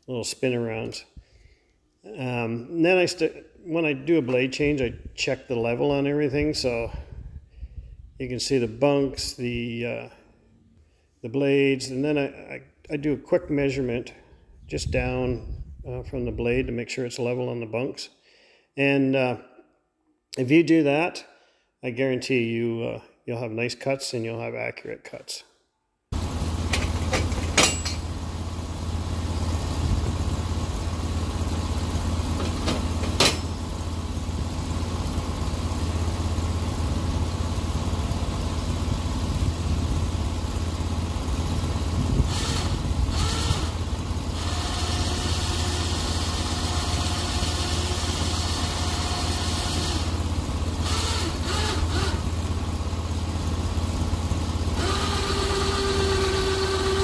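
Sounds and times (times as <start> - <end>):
sawmill engine running: 26.1 - 57.0.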